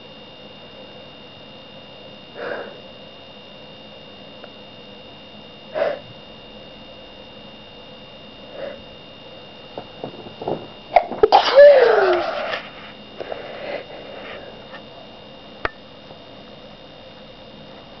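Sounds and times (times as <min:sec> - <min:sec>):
catching breaths: 0:02.4 - 0:02.9, 0:05.7 - 0:06.1, 0:08.5 - 0:08.9, 0:13.2 - 0:14.8
person sneezing: 0:05.8 - 0:06.0, 0:11.2 - 0:12.6.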